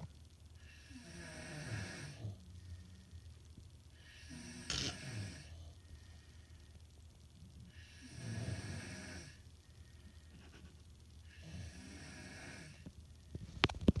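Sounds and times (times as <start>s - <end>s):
snoring: 0.8s - 2.4s, 4.1s - 5.6s, 7.8s - 9.4s, 11.3s - 12.8s.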